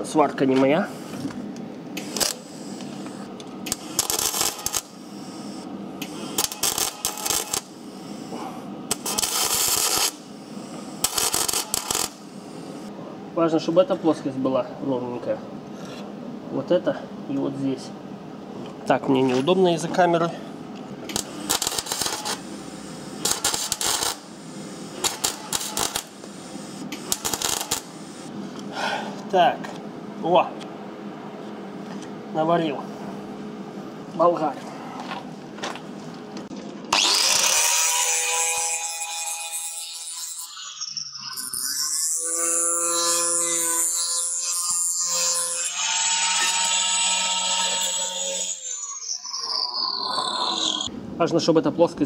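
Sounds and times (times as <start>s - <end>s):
welding arc crackling: 2.0s - 2.8s, 3.7s - 8.2s, 8.9s - 10.2s, 11.0s - 12.9s, 21.1s - 28.3s.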